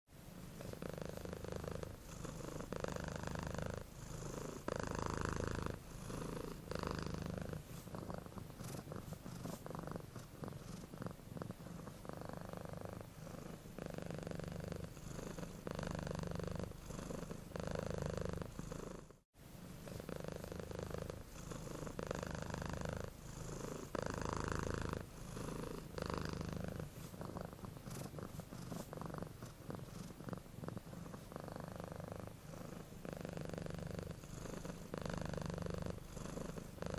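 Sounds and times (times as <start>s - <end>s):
cat purring: 0.2s - 36.9s.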